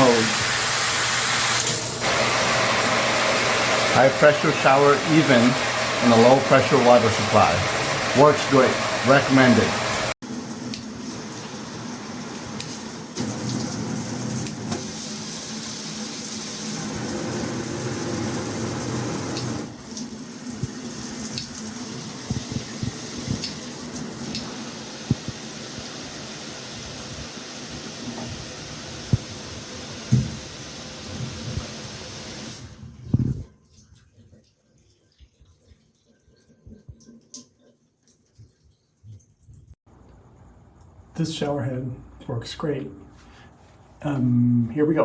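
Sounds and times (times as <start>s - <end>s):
shower head spraying hiss: 12.4s - 33.4s.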